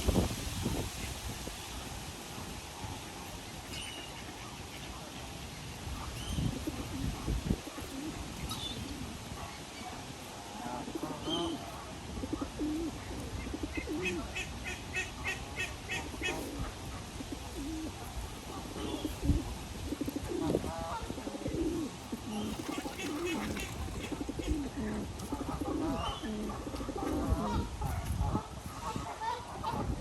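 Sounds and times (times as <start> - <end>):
pigeons cooing: 6.2 - 27.7.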